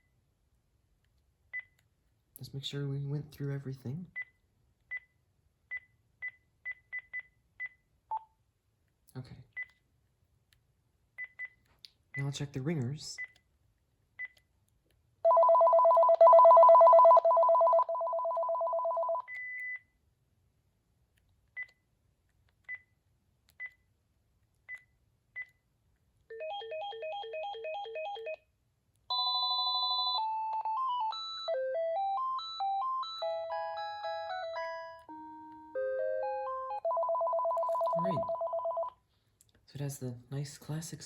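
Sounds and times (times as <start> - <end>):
melodic ringtone tune: 15.2 - 19.3, 26.3 - 28.4, 29.1 - 38.9
trilling phone ring: 15.2 - 19.3, 29.1 - 34.9, 35.8 - 39.0
phone key beeps: 15.3 - 19.8, 36.8 - 39.0.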